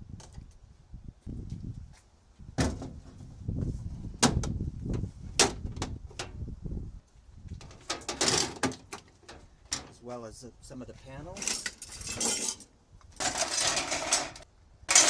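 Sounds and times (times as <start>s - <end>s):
metal rattling scrape: 11.4s - 15.0s.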